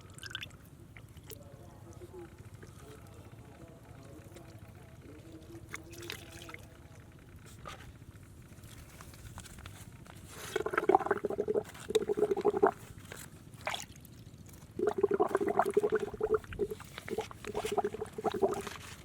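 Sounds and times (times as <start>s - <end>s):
muddy water gurgling: 0.0s - 7.3s, 10.2s - 19.0s.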